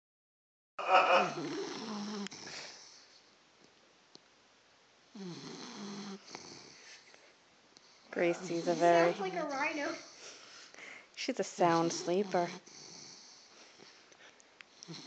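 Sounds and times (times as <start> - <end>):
person snoring: 0.8 - 2.8.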